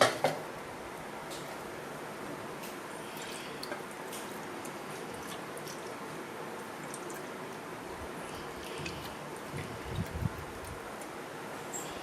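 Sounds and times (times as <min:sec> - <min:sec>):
liquid dripping and trickling: 0:03.1 - 0:12.0.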